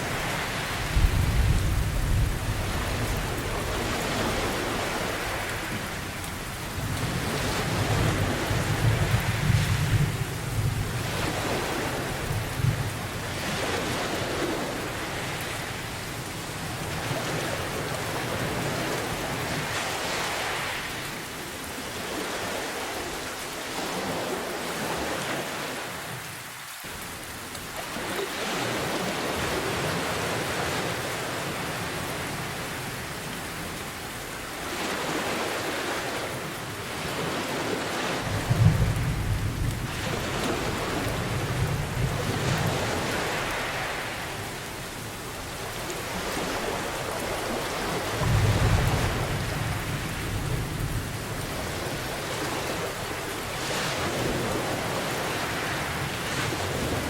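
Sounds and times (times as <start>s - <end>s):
heavy rain hissing: 37.8s - 53.6s.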